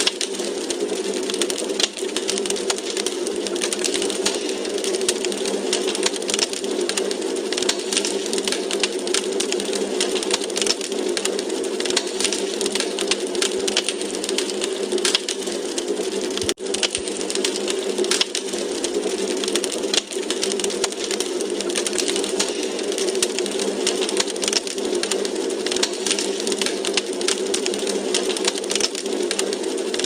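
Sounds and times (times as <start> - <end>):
wood fire crackling: 0.0 - 30.0
pops and snaps from logs: 18.1 - 18.4.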